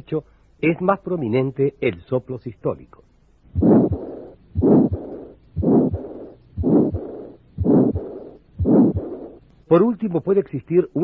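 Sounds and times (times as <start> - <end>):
heartbeat with murmurs: 3.5 - 9.4.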